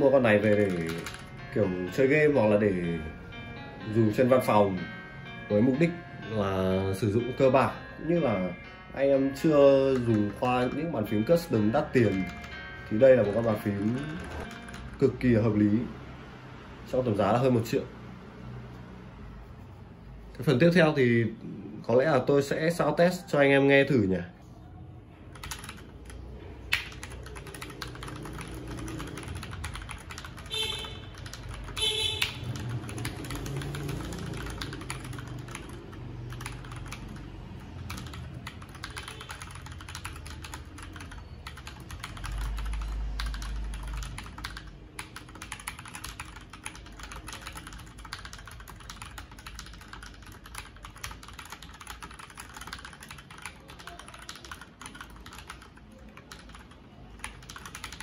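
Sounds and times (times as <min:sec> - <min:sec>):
mechanical keyboard key clacks: 0:25.3 - 0:30.5, 0:31.2 - 0:37.2, 0:37.8 - 0:58.0.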